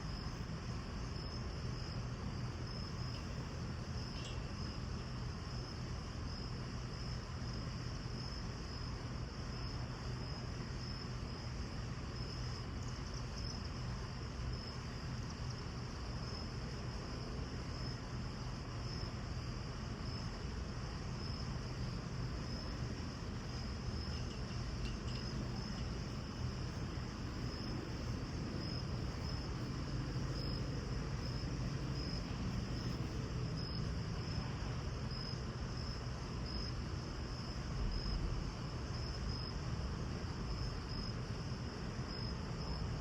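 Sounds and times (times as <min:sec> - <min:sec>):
constant hiss: 0:00.0 - 0:43.0
crickets chirping: 0:00.0 - 0:43.0
low hum: 0:22.3 - 0:34.3.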